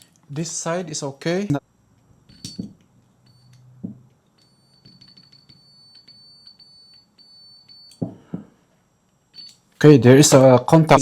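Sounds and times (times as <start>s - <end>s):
multimeter continuity beeping: 1.6s - 9.9s.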